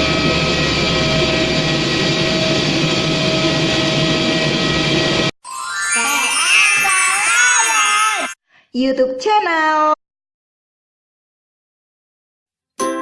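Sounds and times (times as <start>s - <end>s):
jet engines rushing and whining: 0.0s - 5.3s.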